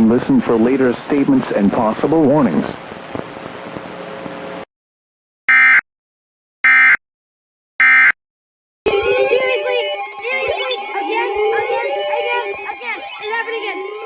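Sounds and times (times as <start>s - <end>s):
radio static hiss: 0.0s - 4.6s
high-pitched data bursts: 8.9s - 14.0s
loud wavering pitched tone: 8.9s - 14.0s.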